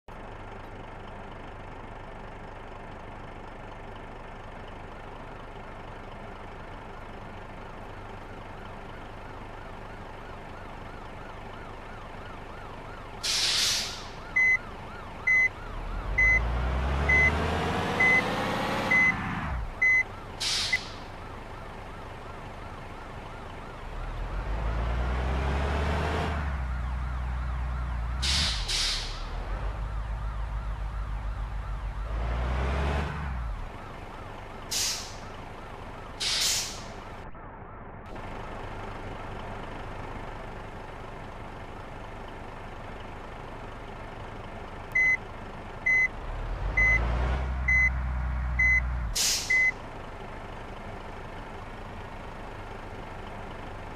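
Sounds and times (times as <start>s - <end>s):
road traffic: 0.0s - 53.9s
bus rumbling past: 12.8s - 21.4s, 23.2s - 37.3s, 38.2s - 53.9s
sharp hissing bursts: 13.2s - 14.0s.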